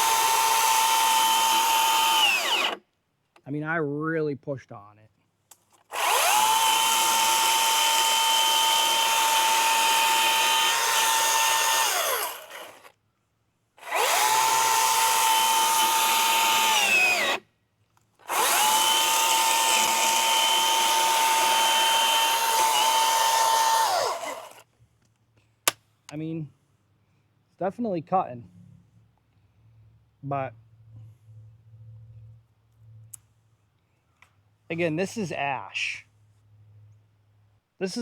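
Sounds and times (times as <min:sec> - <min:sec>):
chainsaw chain cutting log: 0:00.0 - 0:02.8, 0:05.8 - 0:13.0, 0:13.8 - 0:17.4, 0:18.2 - 0:24.7
electric chainsaw whining: 0:00.0 - 0:02.8, 0:05.9 - 0:12.9, 0:13.8 - 0:17.4, 0:18.2 - 0:24.6.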